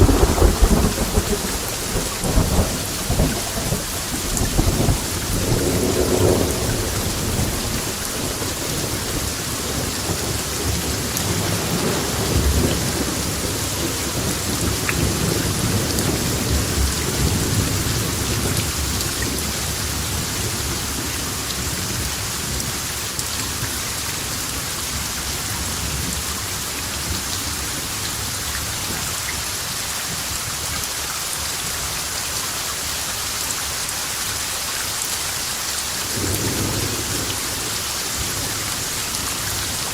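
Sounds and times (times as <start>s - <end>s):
rolling thunder: 0.0s - 22.7s
heavy rain: 0.0s - 39.9s.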